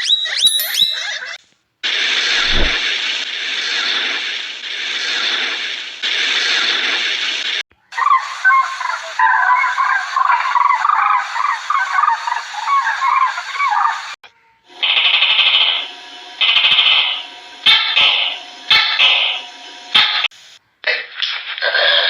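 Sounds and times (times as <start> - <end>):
steady hiss: 1.8 - 7.6, 14.7 - 20.6
rapid bird calls: 8.0 - 14.1.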